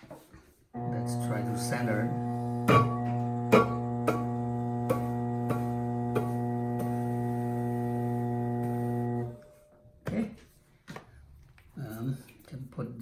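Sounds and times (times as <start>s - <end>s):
pottery wheel motor humming: 0.8s - 9.6s.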